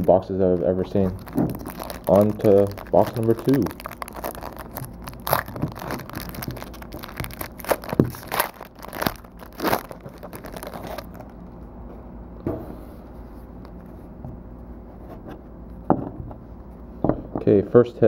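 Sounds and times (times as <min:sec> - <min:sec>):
plastic wrap crinkling and tearing: 0:00.0 - 0:11.4.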